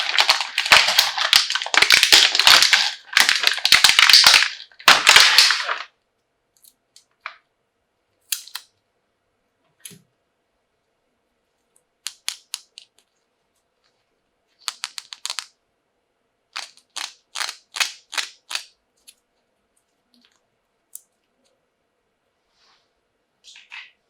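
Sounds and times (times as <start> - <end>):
plastic pieces clicking: 0.0 - 5.9, 12.1 - 13.0, 14.6 - 15.5, 16.6 - 19.2.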